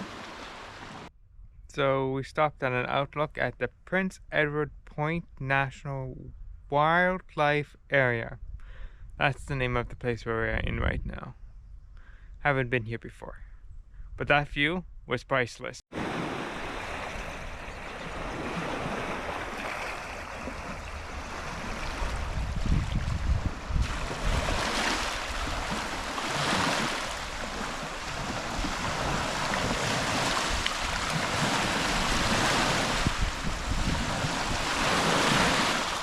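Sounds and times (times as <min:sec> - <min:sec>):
waves washing in: 0:00.0 - 0:01.1, 0:15.9 - 0:36.0
wind rumbling on microphone: 0:08.2 - 0:12.4, 0:16.0 - 0:36.0.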